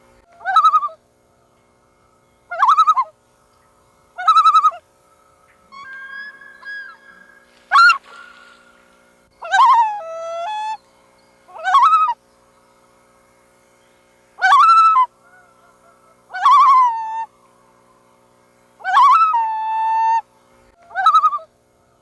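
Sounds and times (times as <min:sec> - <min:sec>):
loon calling: 0:00.3 - 0:01.0, 0:02.5 - 0:03.2, 0:04.2 - 0:04.9, 0:05.5 - 0:08.8, 0:09.4 - 0:10.8, 0:11.5 - 0:12.2, 0:14.4 - 0:17.3, 0:18.8 - 0:21.5.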